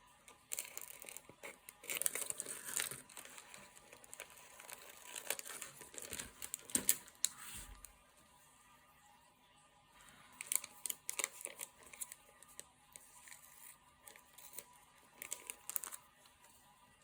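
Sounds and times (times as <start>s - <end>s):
plastic packaging crinkling: 0.5s - 7.9s, 10.4s - 12.6s, 13.2s - 16.0s.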